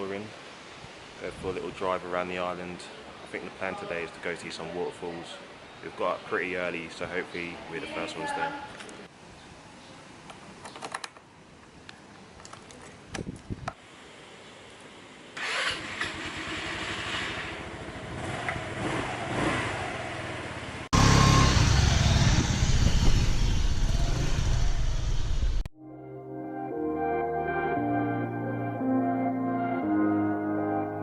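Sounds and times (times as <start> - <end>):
motor scooter engine running: 15.9 - 25.6.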